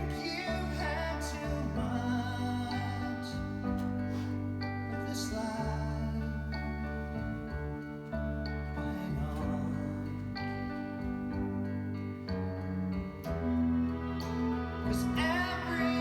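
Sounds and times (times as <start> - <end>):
person singing: 0.0 - 7.3, 13.5 - 16.0
slow gentle song: 0.0 - 16.0.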